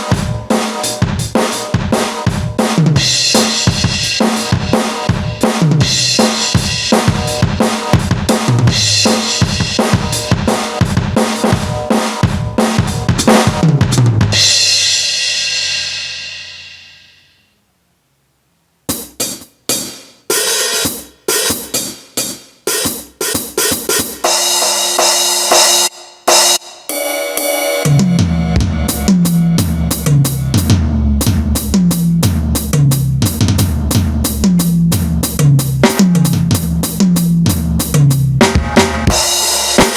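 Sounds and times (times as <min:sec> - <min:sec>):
electronic drum hits: 0:00.0 - 0:14.5, 0:24.3 - 0:32.6, 0:38.4 - 0:39.9
drum beat with deep low tones: 0:00.0 - 0:14.8, 0:27.8 - 0:39.9
cymbal crash: 0:14.4 - 0:17.4, 0:38.4 - 0:39.9.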